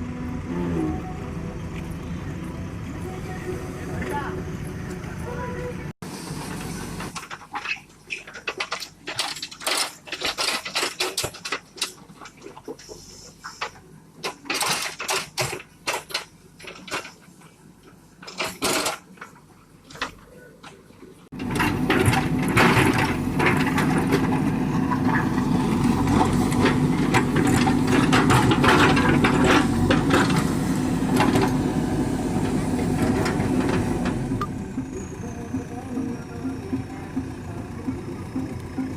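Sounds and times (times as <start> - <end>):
diesel engine running: 0.0 - 7.4, 21.3 - 38.9.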